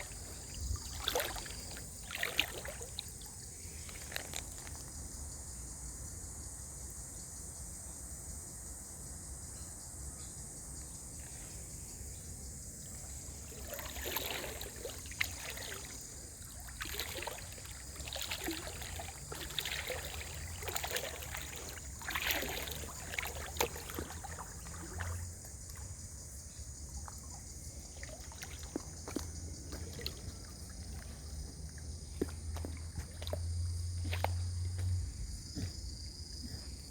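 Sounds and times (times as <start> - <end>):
creek water splashing: 0.0 - 5.0, 12.8 - 35.8.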